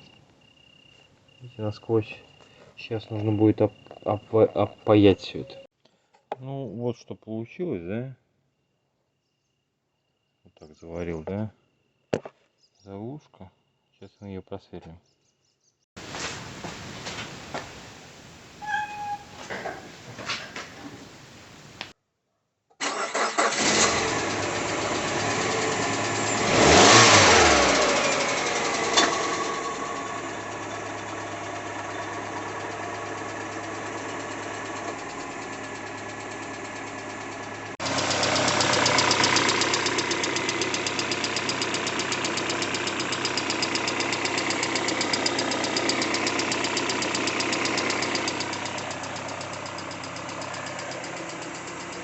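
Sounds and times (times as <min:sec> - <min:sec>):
car engine knocking: 0:23.9 - 0:52.0.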